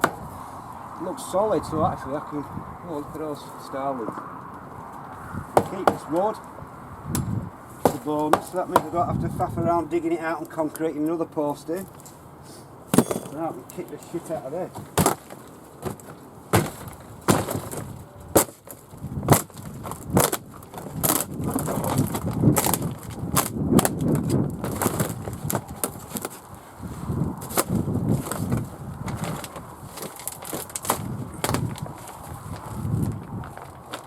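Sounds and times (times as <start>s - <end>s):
wood knocking and cracking: 0.0s - 0.3s, 5.6s - 6.2s, 7.2s - 9.1s, 12.9s - 13.9s, 14.7s - 26.4s, 27.4s - 34.0s
rough scraping and rustling: 7.2s - 34.0s.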